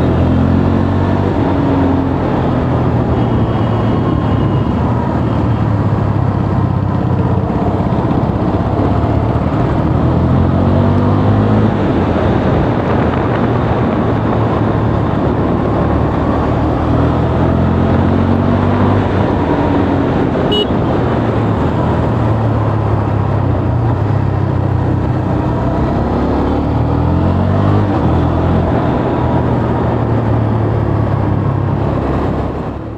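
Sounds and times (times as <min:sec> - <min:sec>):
motorcycle engine accelerating: 0:00.0 - 0:32.9.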